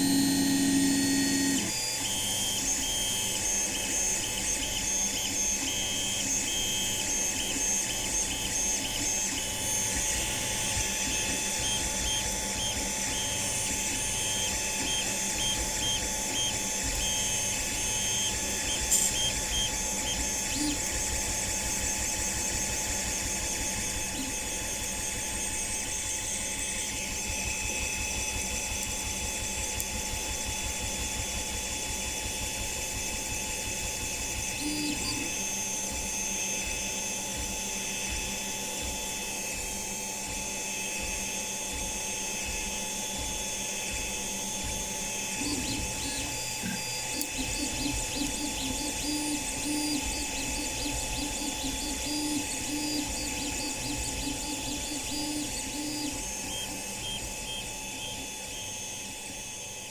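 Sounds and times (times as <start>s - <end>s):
stepper motors whining: 0.0s - 27.7s, 43.9s - 59.6s
mechanical hum: 0.0s - 59.9s.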